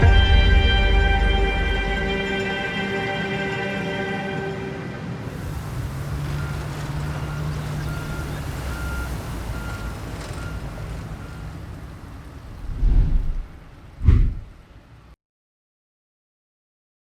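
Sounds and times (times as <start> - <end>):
loud low rumble: 0.0 - 4.8, 12.6 - 14.6
diesel engine humming: 0.0 - 15.1
reversing alarm beeping: 6.2 - 11.5.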